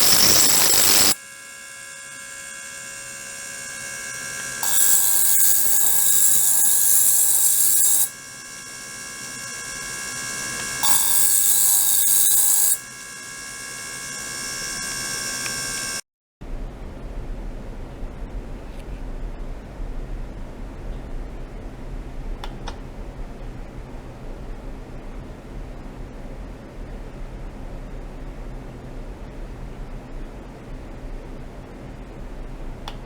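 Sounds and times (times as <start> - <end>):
pump humming: 0.0 - 16.0.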